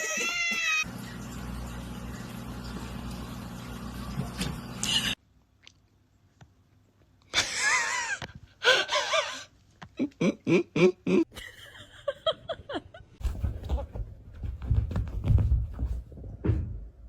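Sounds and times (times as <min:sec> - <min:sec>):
wheezing laughter pulses: 0:07.4 - 0:11.6.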